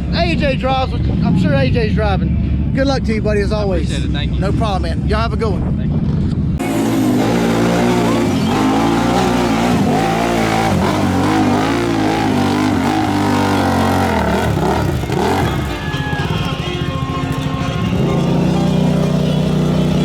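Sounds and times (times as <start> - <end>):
big engine revving hard: 6.6 - 20.0.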